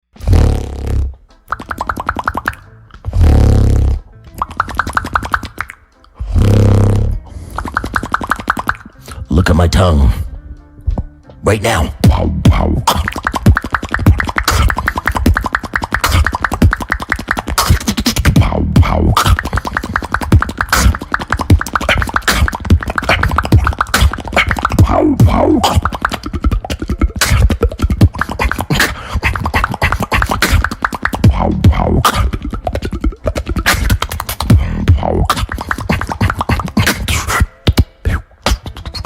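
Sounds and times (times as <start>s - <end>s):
deep bass line: 0.0s - 1.3s, 2.6s - 4.4s, 6.2s - 7.5s, 9.2s - 15.3s, 17.9s - 19.4s, 22.7s - 28.2s, 31.2s - 35.5s
person beatboxing: 0.2s - 10.2s, 10.9s - 39.0s
sliding vocal tone: 11.4s - 37.5s.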